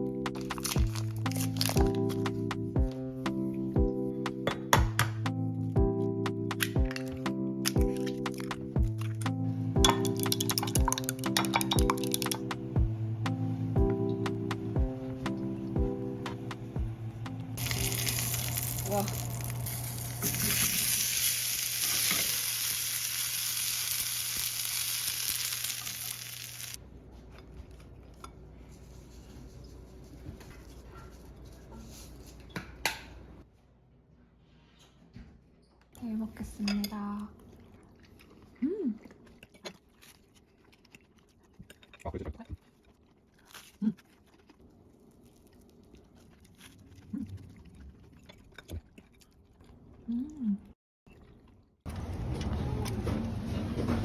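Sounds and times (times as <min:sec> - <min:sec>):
steady low hum: 0:12.4 - 0:20.9
food sizzling in a frying pan: 0:17.6 - 0:26.8
quiet chewing: 0:27.0 - 0:32.6, 0:36.8 - 0:51.7.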